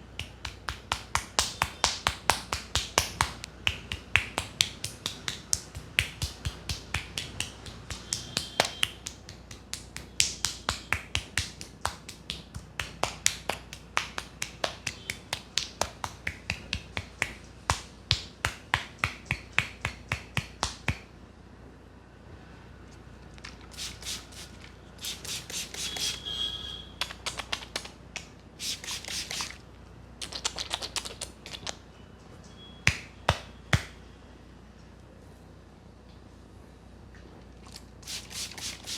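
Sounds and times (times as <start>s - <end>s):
rubbing and scratching hair: 0.2s - 21.0s, 23.4s - 26.2s, 27.0s - 29.6s, 38.0s - 38.9s
hand claps on head: 0.2s - 21.1s, 27.0s - 28.3s, 32.9s - 34.0s.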